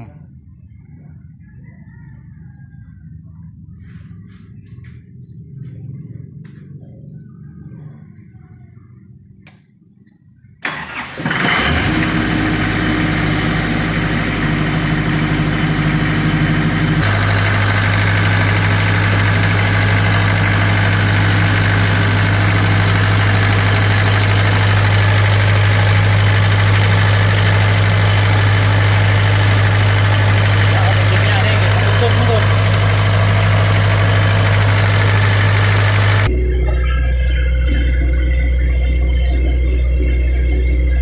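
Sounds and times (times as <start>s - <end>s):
diesel generator running: 0.0s - 9.6s, 10.6s - 41.0s
diesel generator cranking: 10.6s - 37.0s.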